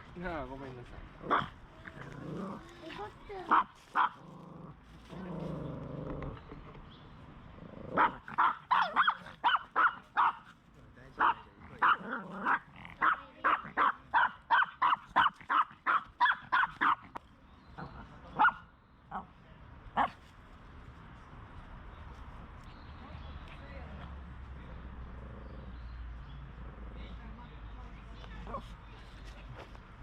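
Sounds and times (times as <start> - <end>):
dog barking agitatedly: 1.2 - 1.6, 3.4 - 4.3, 7.9 - 10.5, 11.2 - 17.2, 18.3 - 19.2.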